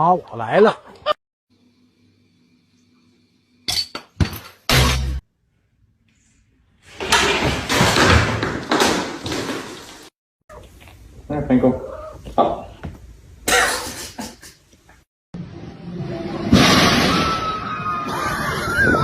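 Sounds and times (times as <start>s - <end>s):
crashing and clattering: 7.0s - 10.1s.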